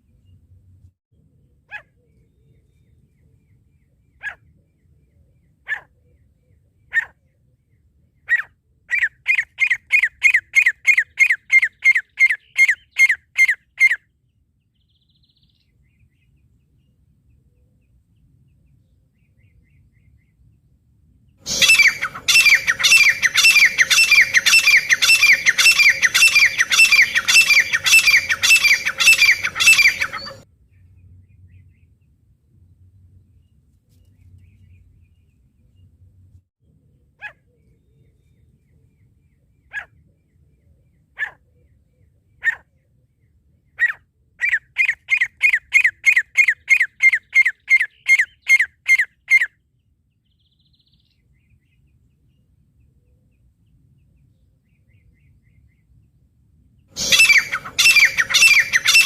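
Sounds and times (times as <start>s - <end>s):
francolin calls: 21.5s - 30.4s, 57.0s - 59.0s.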